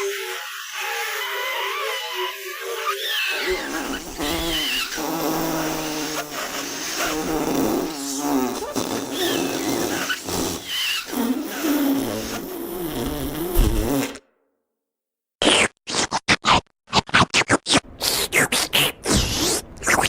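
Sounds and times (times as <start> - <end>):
snuffling slurping vacuum noises: 3.4 - 14.2.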